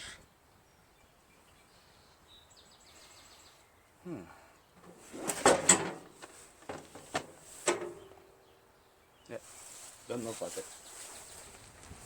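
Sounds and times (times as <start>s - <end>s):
metal brackets knocking and clinking: 4.8s - 8.4s.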